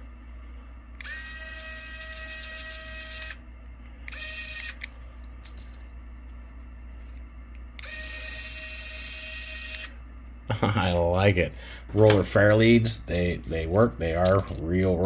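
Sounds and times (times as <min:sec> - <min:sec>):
small winch motor whining: 0:01.0 - 0:03.4, 0:04.1 - 0:04.9, 0:07.8 - 0:10.0.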